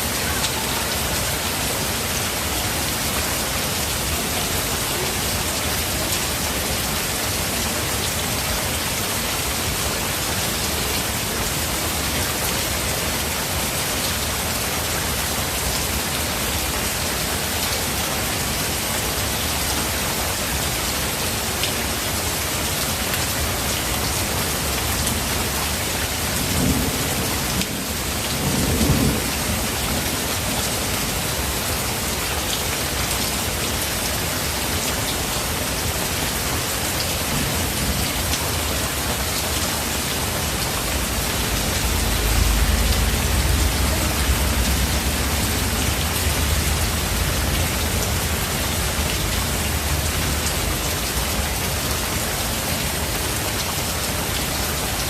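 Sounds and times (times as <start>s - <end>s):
heavy rain hissing: 0.0s - 55.0s
thunder rumbling: 40.9s - 48.8s.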